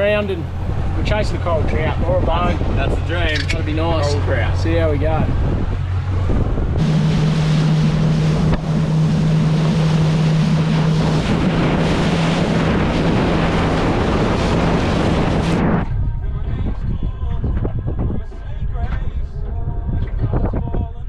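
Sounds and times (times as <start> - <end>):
water rushing past hull: 0.0 - 15.9
motorboat engine drone: 0.0 - 17.9
wind buffeting microphone: 0.0 - 21.0.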